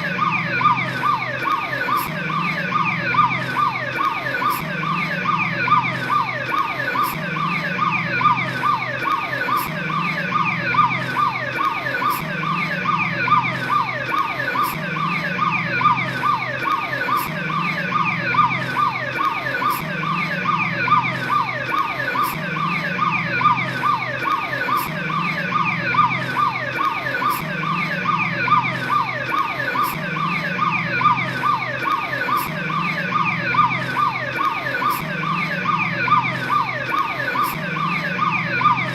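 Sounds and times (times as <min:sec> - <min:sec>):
police siren yelping: 0:00.0 - 0:38.9.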